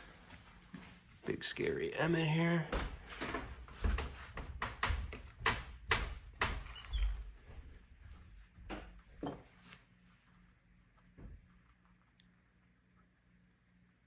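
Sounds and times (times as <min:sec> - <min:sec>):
enclosure door clicking and knocking: 0:02.7 - 0:07.2.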